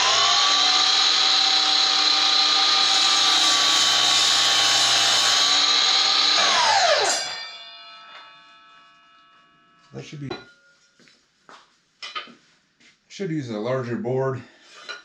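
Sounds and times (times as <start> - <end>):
miter saw motor whine: 0.0 - 7.3
saw blade cutting board: 0.0 - 7.5.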